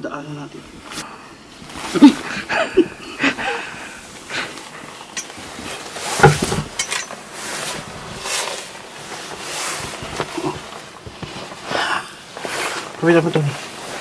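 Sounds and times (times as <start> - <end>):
sharp knock: 6.2 - 6.8.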